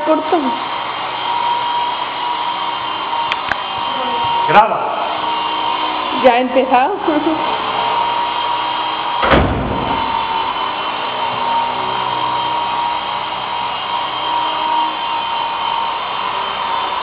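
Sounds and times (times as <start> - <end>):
toy helicopter motor whine: 0.0 - 17.0
sharp thump: 9.2 - 10.2.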